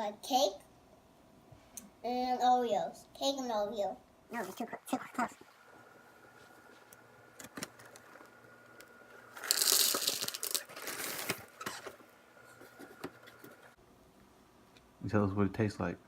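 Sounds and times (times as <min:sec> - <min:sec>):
cereal rattling and crinkling: 0:09.3 - 0:11.5.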